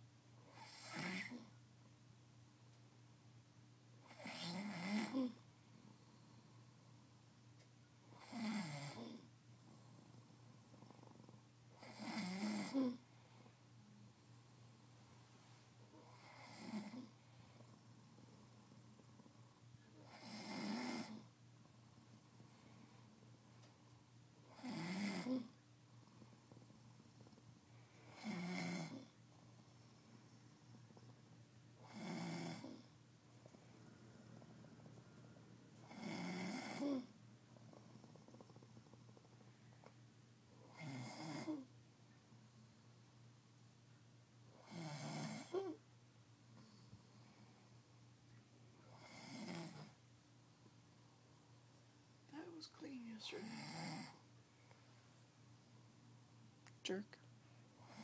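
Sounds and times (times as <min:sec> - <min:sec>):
man snoring: 0:00.6 - 0:01.4, 0:04.1 - 0:05.4, 0:08.2 - 0:09.2, 0:11.8 - 0:13.0, 0:16.1 - 0:17.1, 0:20.0 - 0:21.2, 0:24.5 - 0:25.5, 0:28.1 - 0:29.1, 0:31.8 - 0:32.8, 0:35.8 - 0:37.1, 0:40.7 - 0:41.6, 0:44.6 - 0:45.8, 0:48.9 - 0:49.9, 0:53.4 - 0:54.2.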